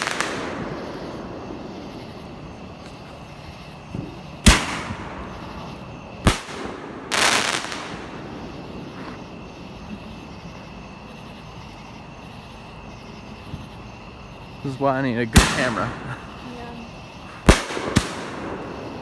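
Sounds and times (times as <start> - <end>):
fireworks bangs: 0.0 - 10.6, 15.2 - 19.0
hissing firework burst: 0.0 - 10.6, 15.3 - 19.0.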